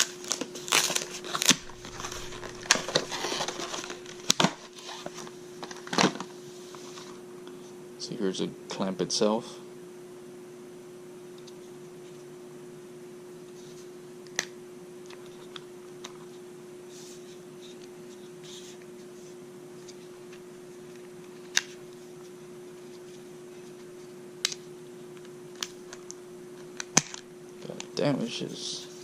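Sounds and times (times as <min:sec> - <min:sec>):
steady low hum: 0:00.0 - 0:05.8
faint rustling: 0:00.7 - 0:04.7.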